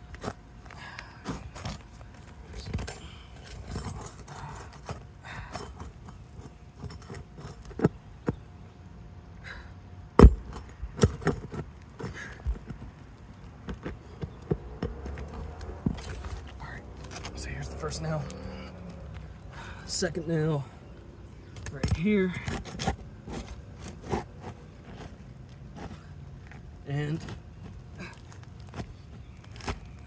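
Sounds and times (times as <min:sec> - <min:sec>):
hand tool scraping on shingles: 0:01.2 - 0:08.0, 0:21.8 - 0:30.0.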